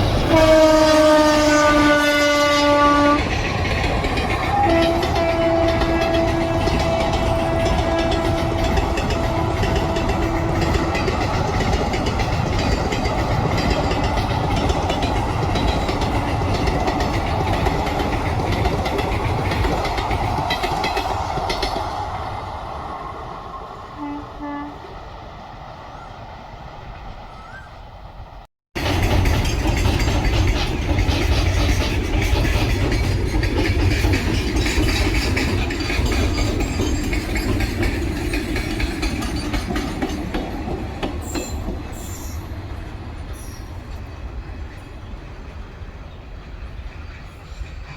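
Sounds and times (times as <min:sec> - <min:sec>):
train horn: 0:00.0 - 0:03.3, 0:04.4 - 0:11.2, 0:23.9 - 0:24.9
train wheels rumbling and clattering: 0:00.0 - 0:24.4, 0:25.0 - 0:47.9.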